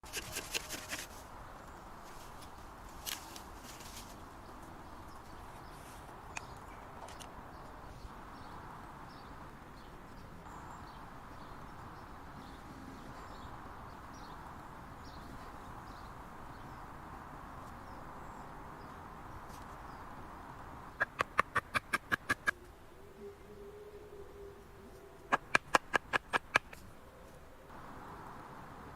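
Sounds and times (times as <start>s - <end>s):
outdoor background noise: 0.0s - 28.9s
sharp clicks: 21.0s - 22.6s, 25.3s - 26.9s.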